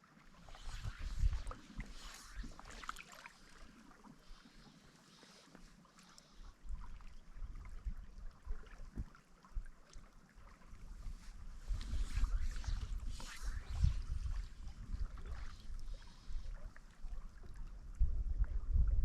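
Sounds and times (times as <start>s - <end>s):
running stream water: 0.0s - 18.7s
wind buffeting microphone: 0.5s - 2.6s, 10.8s - 16.6s, 17.4s - 19.0s.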